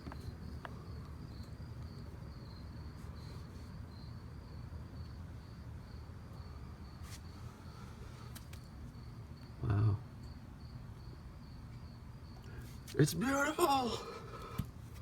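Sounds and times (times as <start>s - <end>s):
cricket chirping: 0.0s - 15.0s.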